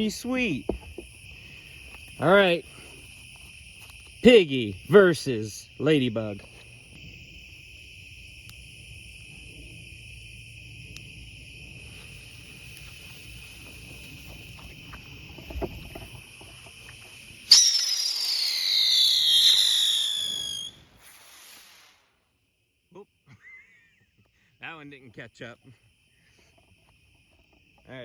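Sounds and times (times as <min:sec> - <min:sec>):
crickets chirping: 0:00.0 - 0:28.0
firework whistle falling in pitch: 0:17.5 - 0:21.9.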